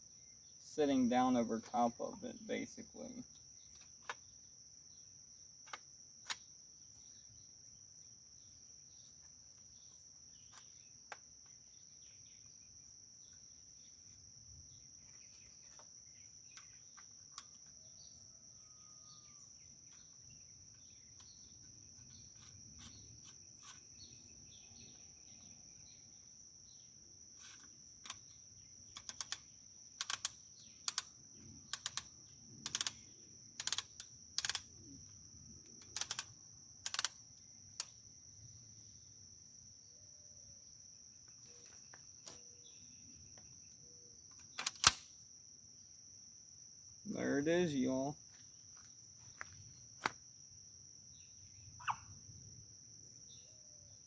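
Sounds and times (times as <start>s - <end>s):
high insect drone: 0.0s - 54.0s
shotgun mechanism clicking: 31.7s - 33.0s, 33.6s - 34.7s, 35.8s - 36.3s, 36.9s - 37.2s, 44.4s - 45.1s.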